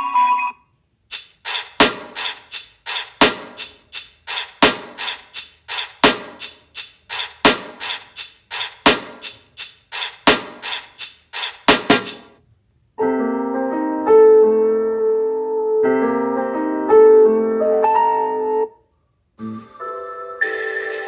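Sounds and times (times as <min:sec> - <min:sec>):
drum hits: 0:01.1 - 0:12.4
held piano chords: 0:13.0 - 0:18.8.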